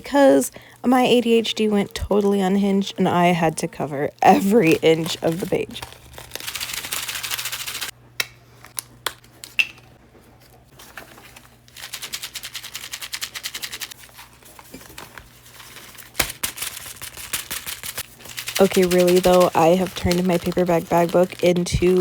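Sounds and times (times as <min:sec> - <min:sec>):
googly eyes rattling: 0:04.2 - 0:07.9, 0:11.8 - 0:14.0, 0:16.6 - 0:22.0.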